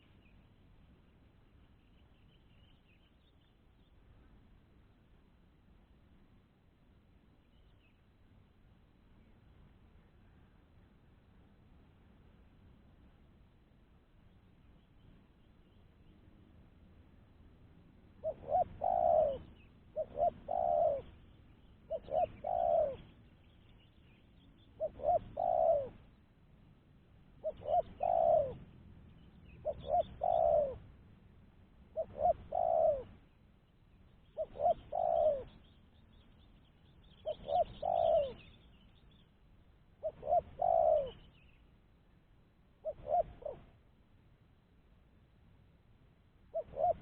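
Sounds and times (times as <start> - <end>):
dove cooing: 18.2 - 23.4, 24.7 - 26.2, 27.4 - 28.8, 29.5 - 30.8, 31.9 - 33.3, 34.2 - 36.2, 37.1 - 38.7, 40.0 - 41.4, 42.8 - 43.8, 46.5 - 47.0.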